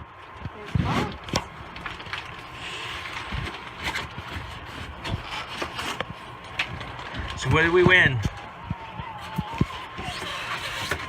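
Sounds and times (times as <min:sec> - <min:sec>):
cardboard scraping and rubbing: 0:00.6 - 0:07.2, 0:09.2 - 0:11.0.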